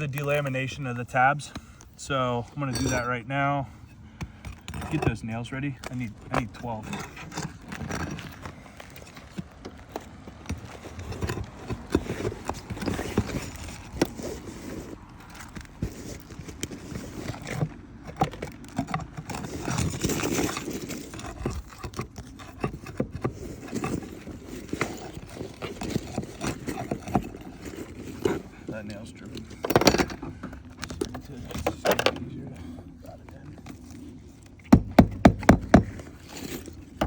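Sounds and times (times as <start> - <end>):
metal knocks and scrapes: 2.6 - 3.2
flat bar prying nails from shingles: 34.6 - 36.6.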